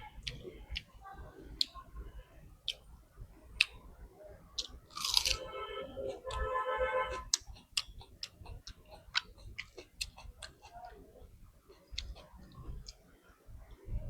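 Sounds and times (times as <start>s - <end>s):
person chewing food: 0.2s - 0.9s, 2.6s - 2.9s, 3.6s - 3.8s, 4.6s - 5.4s, 6.0s - 6.5s, 7.1s - 13.1s.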